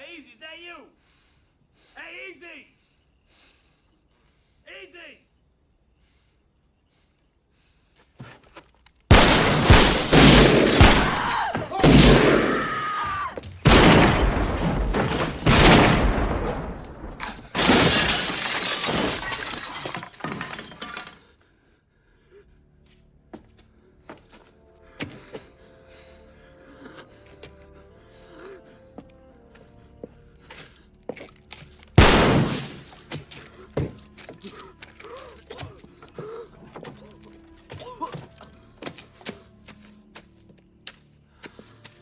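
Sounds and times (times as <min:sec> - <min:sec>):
gunshots: 0:09.1 - 0:12.8, 0:13.6 - 0:18.1, 0:32.0 - 0:33.1
debris breaking: 0:09.1 - 0:21.3, 0:31.5 - 0:34.5
glass shattering: 0:13.7 - 0:21.3.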